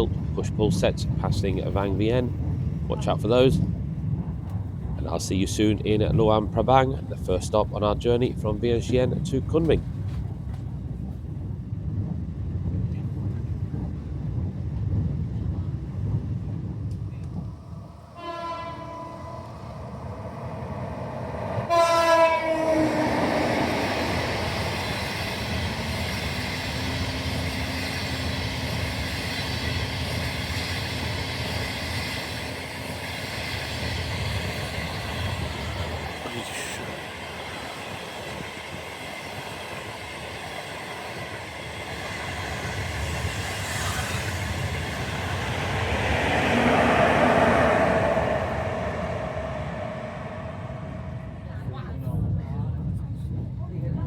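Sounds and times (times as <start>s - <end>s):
train rushing past: 13.2s - 53.2s
train horn blasts: 18.1s - 19.6s, 21.7s - 23.4s.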